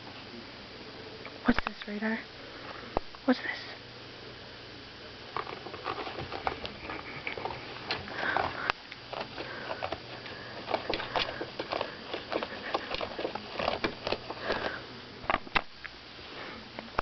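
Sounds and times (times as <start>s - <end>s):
puppy sniffing: 5.6s - 14.8s.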